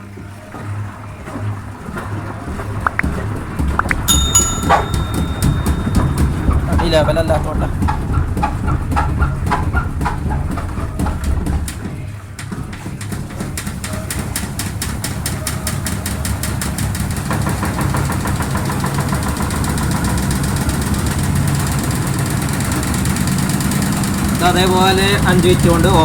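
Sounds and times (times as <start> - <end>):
washing machine drum spinning: 0.4 - 26.0.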